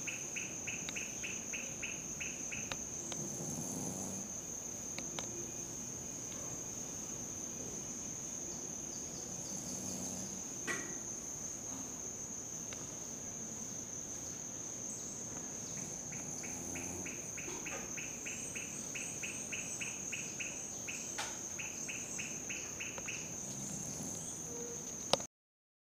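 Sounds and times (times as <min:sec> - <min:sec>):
lower pulsing chirping: 0:00.0 - 0:03.2, 0:14.9 - 0:24.8
crickets high trill: 0:00.0 - 0:25.1.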